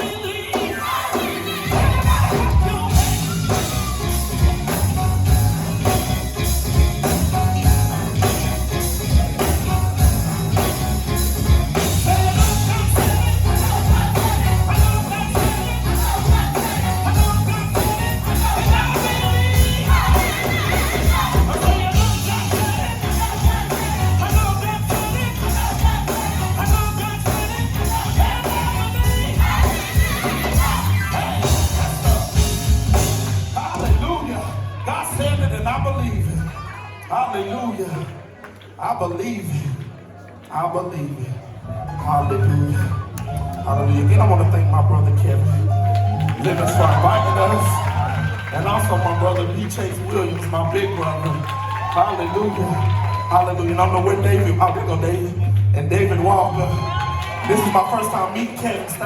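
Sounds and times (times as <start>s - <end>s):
gospel choir singing: 0.0s - 6.6s, 7.4s - 34.6s
live band drums bass and keys: 0.0s - 36.5s, 41.6s - 55.4s.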